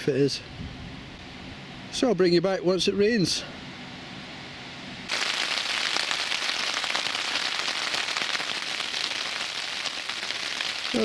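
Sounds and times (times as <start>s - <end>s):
heavy rain on tent: 5.1s - 11.0s.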